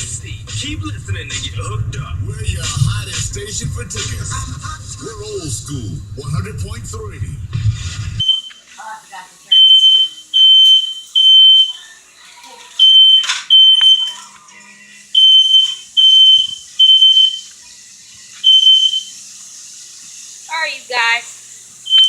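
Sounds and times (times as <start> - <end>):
smoke alarm beeping: 8.2 - 8.8, 9.5 - 11.8, 12.8 - 14.2, 15.2 - 17.6, 18.4 - 19.3.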